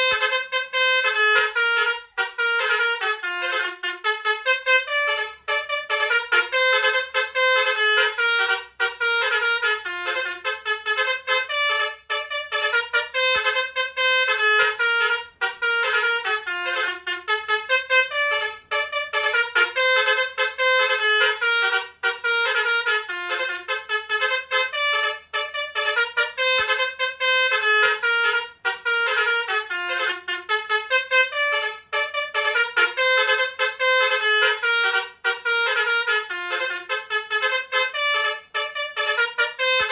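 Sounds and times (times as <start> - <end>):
musical bus horn tune: 0.0 - 39.9.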